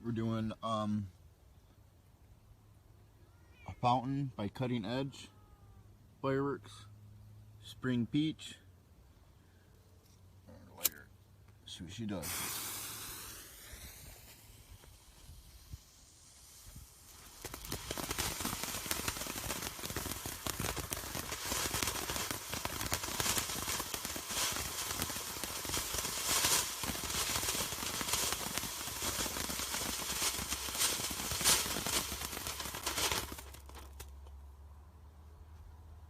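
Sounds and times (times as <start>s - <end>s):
firework fountain hissing and crackling: 12.1s - 34.2s.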